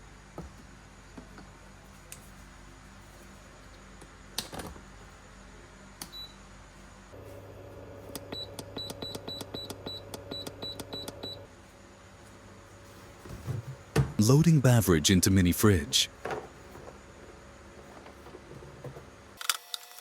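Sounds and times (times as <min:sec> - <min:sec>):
keypad beeping: 0:08.2 - 0:11.4
steady electronic hum: 0:13.8 - 0:18.0.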